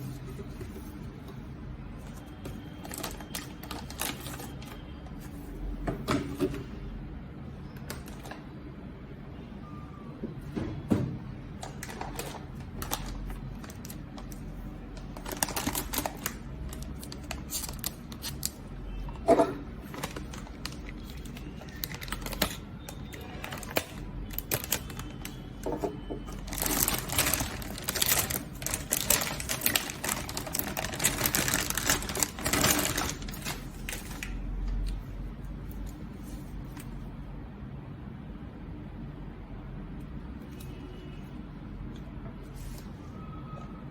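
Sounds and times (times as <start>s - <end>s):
cardboard and plastic crinkling: 0.0s - 5.4s, 11.6s - 35.0s.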